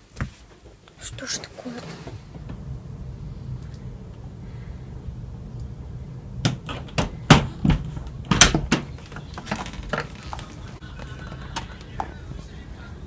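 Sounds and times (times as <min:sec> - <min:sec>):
sharp knocks and thumps: 0:06.4 - 0:10.5.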